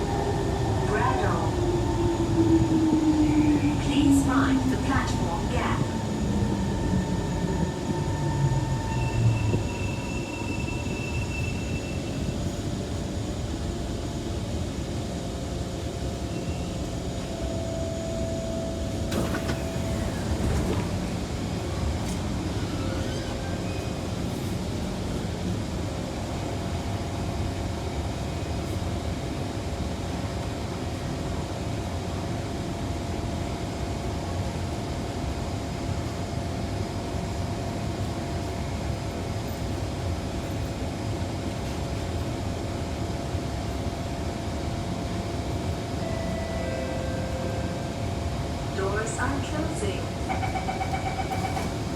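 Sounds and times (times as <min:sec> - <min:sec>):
train wheels rumbling on rail: 0:00.0 - 0:46.4, 0:47.3 - 0:51.9
train motor hum: 0:16.8 - 0:22.9.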